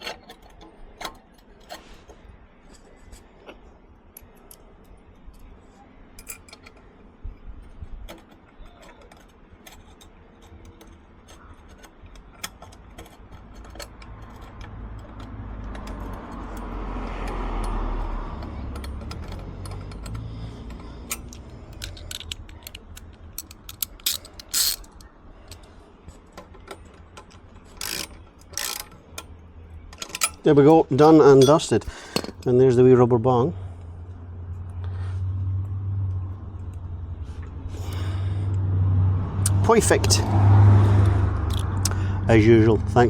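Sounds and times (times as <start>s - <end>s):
metal tools clicking and scraping: 0.0s - 32.7s, 41.0s - 41.9s.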